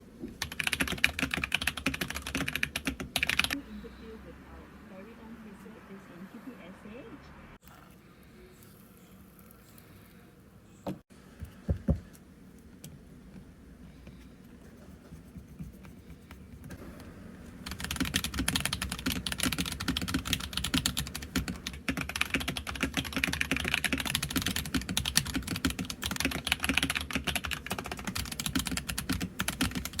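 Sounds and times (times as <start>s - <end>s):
mechanical keyboard typing: 0.4s - 3.6s, 17.6s - 30.0s.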